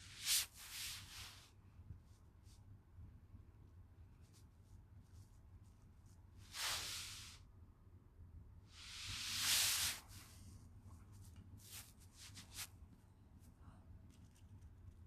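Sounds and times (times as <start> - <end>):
burst of hiss: 6.5 - 7.4, 8.8 - 10.0.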